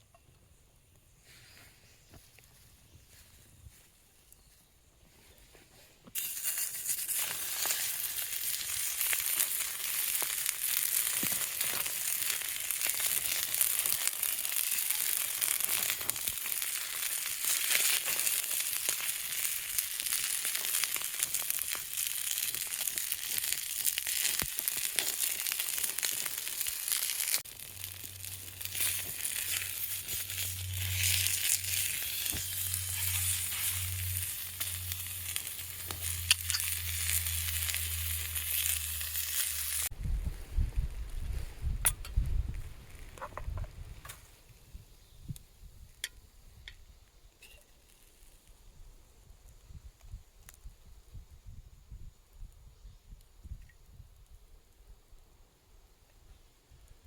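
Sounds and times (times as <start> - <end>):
food sizzling in a frying pan: 6.2 - 39.9.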